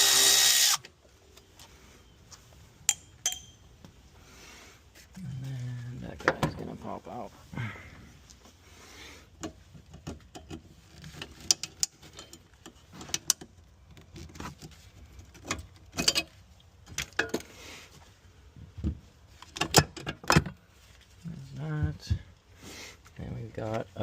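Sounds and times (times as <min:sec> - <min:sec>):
wrench and metal fittings clinking: 0:02.9 - 0:03.6.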